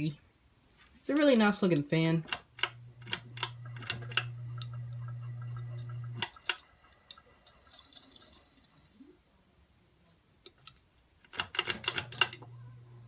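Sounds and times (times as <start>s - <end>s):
ceiling fan motor humming: 1.2s - 9.3s, 11.7s - 13.0s.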